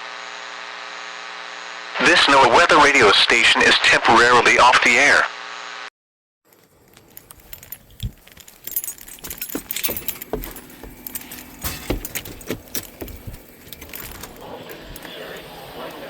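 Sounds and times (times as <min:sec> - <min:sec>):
keys jangling: 0:06.5 - 0:15.6.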